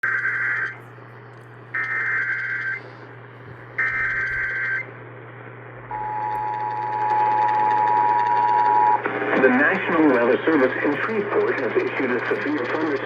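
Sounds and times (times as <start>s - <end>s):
low radio hum: 0.0s - 13.0s
two-tone attention signal: 5.9s - 9.0s.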